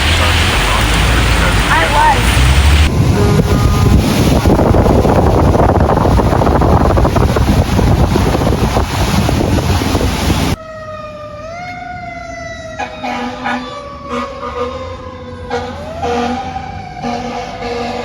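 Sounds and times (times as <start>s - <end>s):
emergency vehicle siren wailing: 0.0s - 4.6s, 10.5s - 18.0s
torrential rain: 0.0s - 10.6s
wind on microphone: 0.0s - 10.6s.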